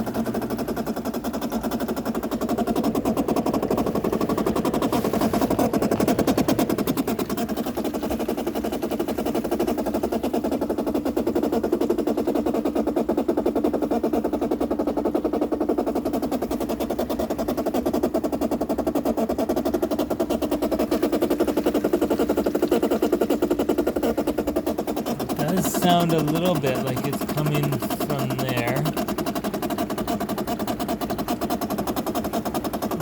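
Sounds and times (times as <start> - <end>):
water flowing in: 0.0 - 10.8, 20.3 - 33.0.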